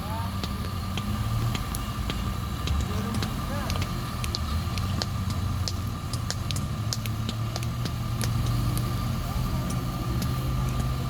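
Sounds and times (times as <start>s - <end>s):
engine humming with whine: 0.0s - 11.0s
sharp ticks: 0.4s - 8.9s.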